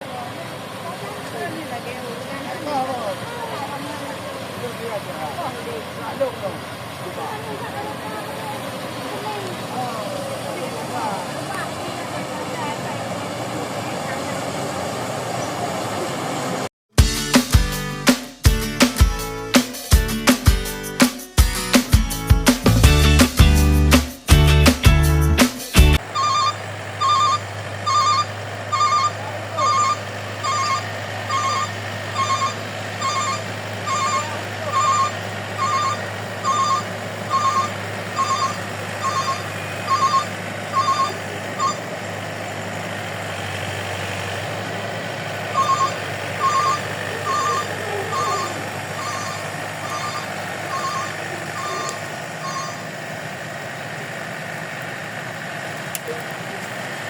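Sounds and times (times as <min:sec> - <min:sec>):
combine harvester engine hum: 0:00.0 - 0:16.6, 0:26.0 - 0:57.0
reversing alarm beeping: 0:26.1 - 0:42.0, 0:45.5 - 0:53.2.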